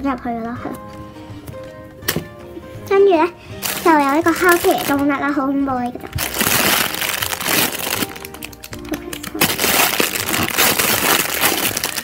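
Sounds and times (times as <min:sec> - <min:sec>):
background music: 0:00.0 - 0:12.0
plastic packaging crinkling: 0:03.6 - 0:05.2, 0:06.0 - 0:12.0.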